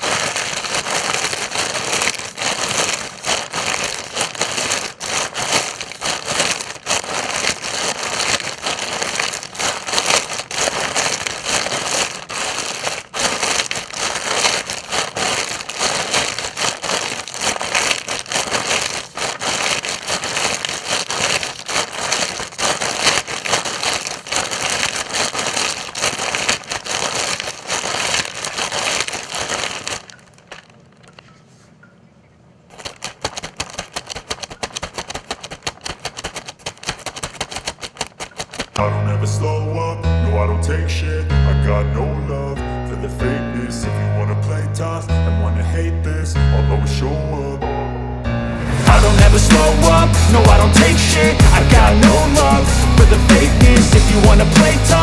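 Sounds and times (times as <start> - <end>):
footsteps crunching through dry leaves: 0.0 - 31.3, 32.7 - 38.8, 48.5 - 55.0.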